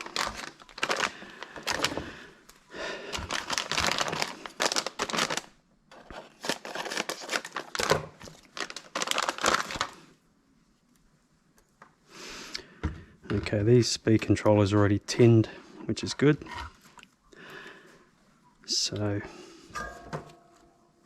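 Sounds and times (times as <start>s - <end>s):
crinkling and rustling handling: 0.0s - 12.0s.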